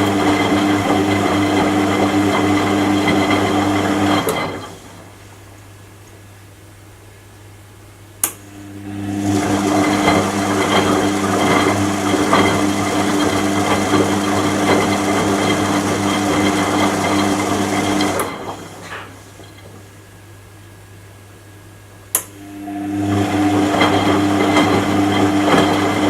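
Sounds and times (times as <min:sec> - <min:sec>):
washing machine motor whirring: 0:00.0 - 0:05.7, 0:08.2 - 0:20.6, 0:21.8 - 0:26.0
washing machine clicking: 0:22.1 - 0:22.4, 0:23.1 - 0:26.0.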